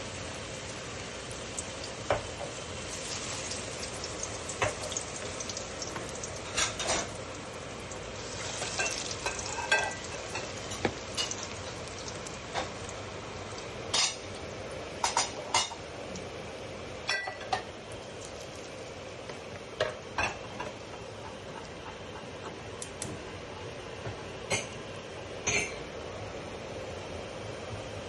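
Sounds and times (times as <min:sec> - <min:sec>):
plantain frying in hot oil: 0:00.0 - 0:22.4.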